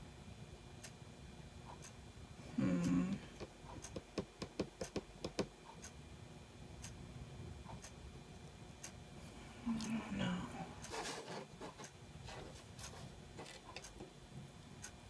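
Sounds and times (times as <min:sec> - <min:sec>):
person humming: 0:02.5 - 0:03.5, 0:09.6 - 0:10.9.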